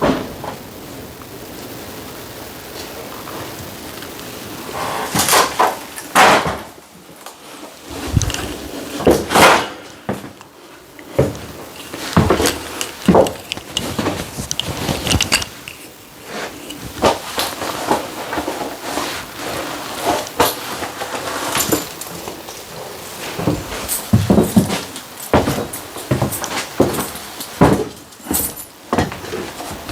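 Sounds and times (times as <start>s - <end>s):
objects knocking and clattering: 11.1s - 18.5s.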